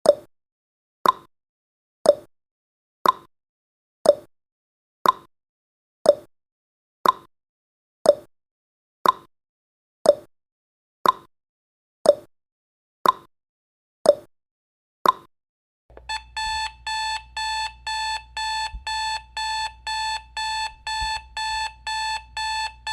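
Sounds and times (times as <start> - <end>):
alarm clock beeping: 15.9 - 22.9
faint low hum: 15.9 - 22.9
timer ticking: 15.9 - 22.9.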